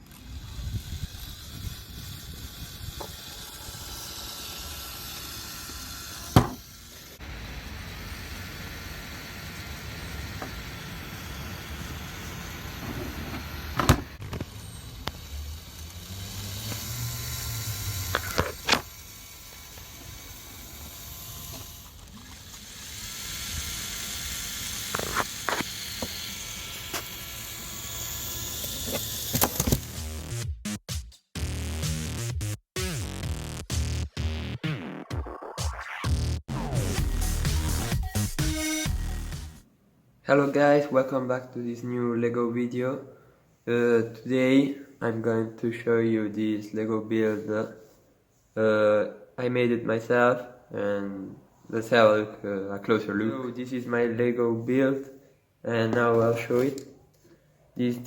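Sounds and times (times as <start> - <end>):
small electric motor and gearing: 0.0 - 30.4.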